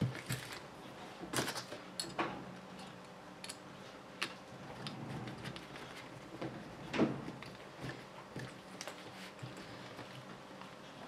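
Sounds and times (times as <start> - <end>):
clicks of small parts and hand tool: 1.3 - 3.6.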